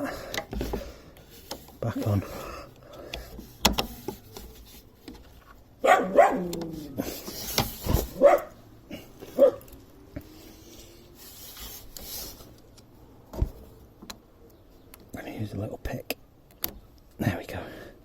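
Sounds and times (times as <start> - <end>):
sharp clicks and knocks: 2.9 - 5.6
dog barking: 5.8 - 6.5, 8.2 - 8.6, 9.4 - 9.6.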